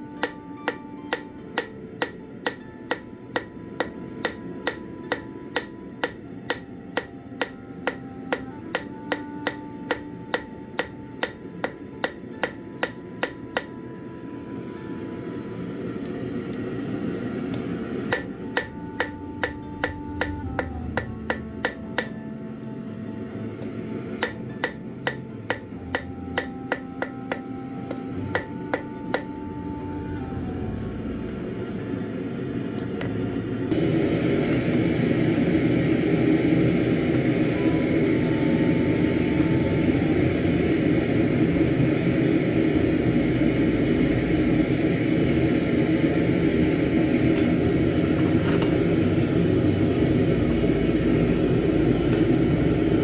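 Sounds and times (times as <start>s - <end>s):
hammer on horseshoe and anvil: 0.2s - 13.7s, 18.1s - 22.2s, 24.2s - 29.4s.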